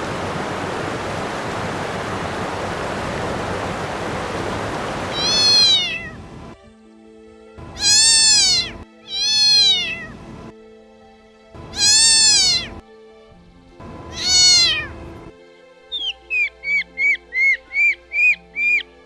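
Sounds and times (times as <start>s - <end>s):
cat meowing: 5.1s - 6.2s, 7.8s - 10.2s, 11.8s - 12.8s, 14.1s - 15.0s.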